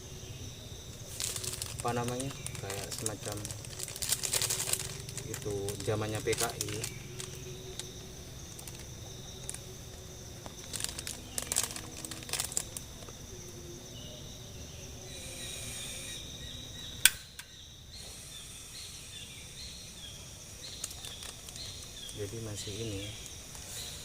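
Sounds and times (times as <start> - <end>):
high-pitched insect drone: 0.0 - 24.0
crackles: 0.6 - 13.7, 16.8 - 24.0
sharp click: 17.0 - 17.6.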